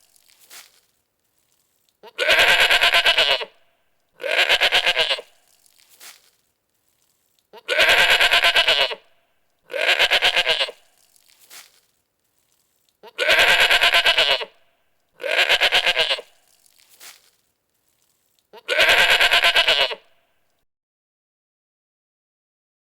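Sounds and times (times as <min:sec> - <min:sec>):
goat bleating: 0:02.0 - 0:03.6, 0:04.2 - 0:05.4, 0:07.5 - 0:09.0, 0:09.7 - 0:10.9, 0:13.0 - 0:14.5, 0:15.2 - 0:16.3, 0:18.5 - 0:20.1.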